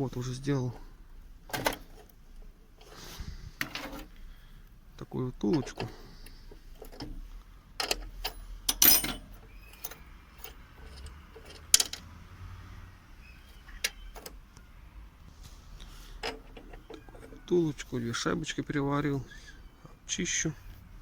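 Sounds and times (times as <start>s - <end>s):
metal parts clinking and knocking: 3.6s - 4.2s, 5.4s - 12.2s, 16.1s - 17.5s.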